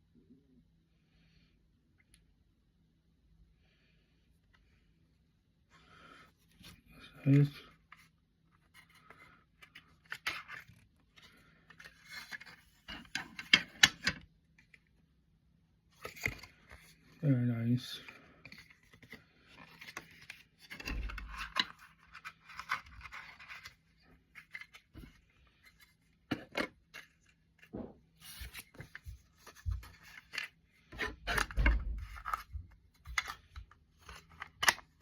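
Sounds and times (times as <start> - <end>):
packaging rustling and scraping: 18.4 - 35.0.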